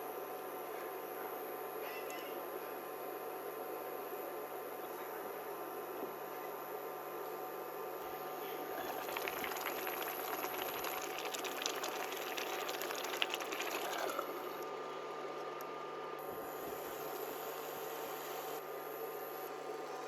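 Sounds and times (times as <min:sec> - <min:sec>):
liquid splashing in a cup: 0:08.7 - 0:14.6.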